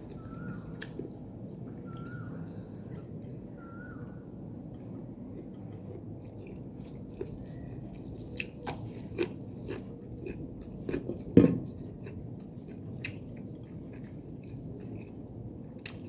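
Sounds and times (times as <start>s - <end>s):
chewing mouth clicks and smacks: 4.7s - 16.0s.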